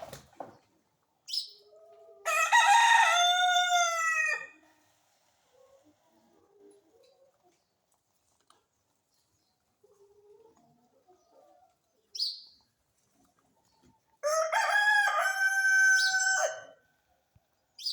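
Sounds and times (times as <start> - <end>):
rooster crowing: 2.2 - 4.6, 14.2 - 16.8.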